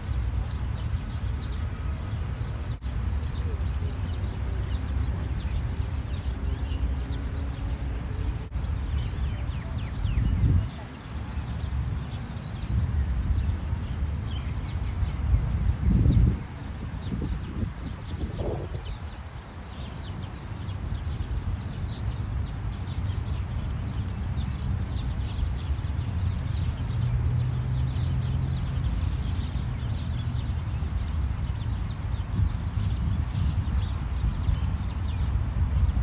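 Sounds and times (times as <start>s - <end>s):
small birds chirping: 0.0s - 36.0s.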